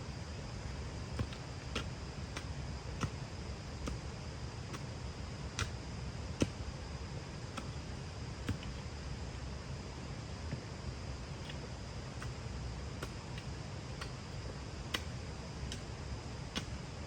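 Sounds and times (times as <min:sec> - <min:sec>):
low background rumble: 0:00.0 - 0:17.0.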